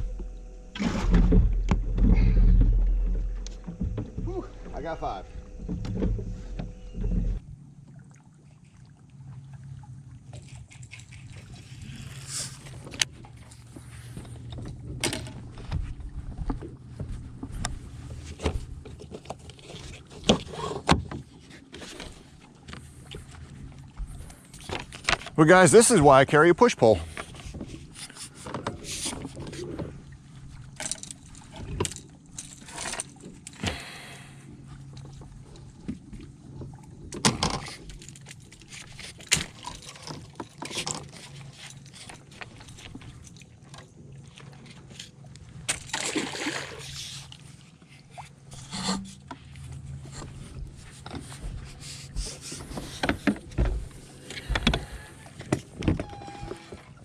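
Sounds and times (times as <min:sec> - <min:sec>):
pole knocking and scraping boat: 0:00.0 - 0:07.6, 0:09.3 - 0:33.6, 0:34.5 - 0:57.0
steady low hum: 0:00.0 - 0:40.4, 0:41.0 - 0:57.0
water splashing: 0:07.8 - 0:14.2, 0:38.8 - 0:52.9.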